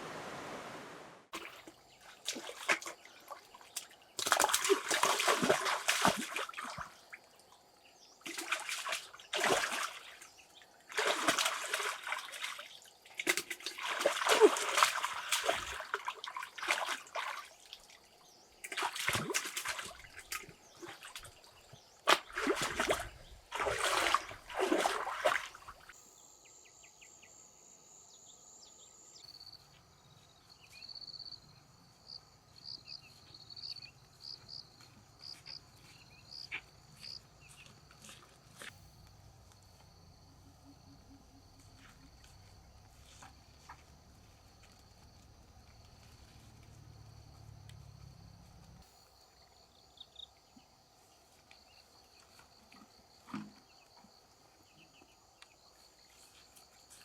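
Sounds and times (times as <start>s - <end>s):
water splashing and sloshing: 0.0s - 26.0s, 51.9s - 54.2s
insects chirring: 1.4s - 57.0s.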